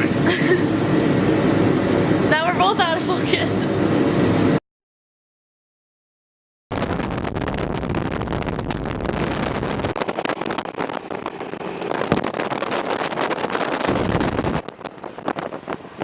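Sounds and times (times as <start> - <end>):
wind buffeting the microphone: 6.8 - 16.0
moving vehicle rumble: 9.2 - 16.0.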